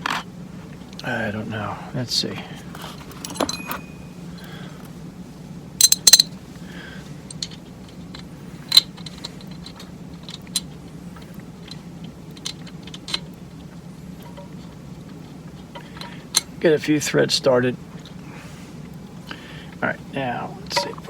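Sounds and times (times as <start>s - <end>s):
steady low hum: 0.0s - 21.0s
small steel parts clinking: 5.8s - 6.3s, 7.2s - 10.7s.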